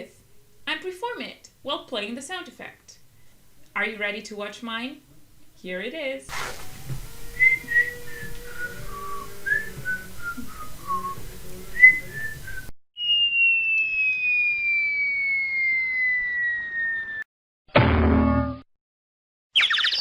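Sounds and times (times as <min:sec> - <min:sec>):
room noise: 0:06.3 - 0:12.7
falling whistle sound effect: 0:06.3 - 0:17.3, 0:19.6 - 0:20.0
whistled descending notes: 0:06.3 - 0:17.3, 0:19.6 - 0:20.0.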